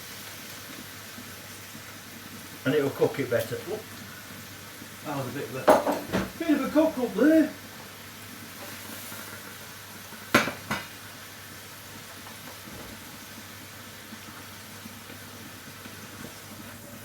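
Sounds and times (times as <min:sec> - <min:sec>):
vegetables sizzling in frying pan: 0:00.0 - 0:17.0
utensil clanking against pan: 0:05.6 - 0:06.4.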